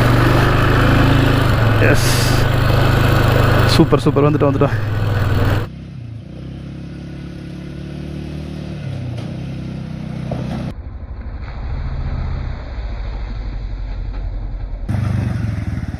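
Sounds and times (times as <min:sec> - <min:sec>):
quad bike engine running: 0:00.0 - 0:10.7, 0:14.9 - 0:15.9.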